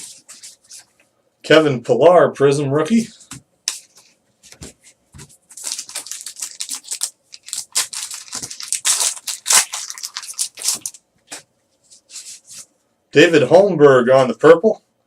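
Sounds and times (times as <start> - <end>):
foil wrapper crinkling: 5.5 - 11.0.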